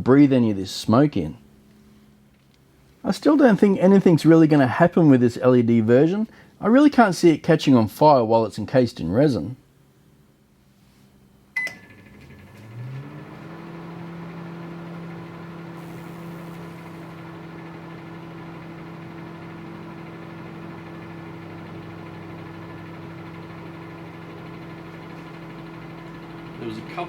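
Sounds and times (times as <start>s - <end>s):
microwave oven humming: 9.1s - 27.0s
microwave oven beep: 11.5s - 13.2s.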